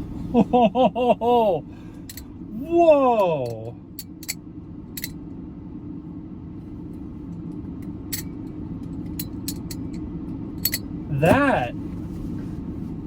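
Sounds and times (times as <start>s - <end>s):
car engine humming: 0.0s - 5.0s, 10.9s - 13.0s.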